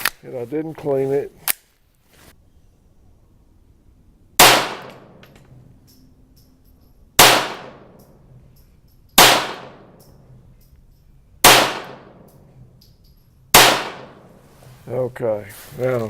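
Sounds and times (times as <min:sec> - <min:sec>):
pistol shots: 0:04.4 - 0:05.2, 0:07.2 - 0:08.2, 0:09.2 - 0:10.1, 0:11.4 - 0:12.4, 0:13.5 - 0:14.4.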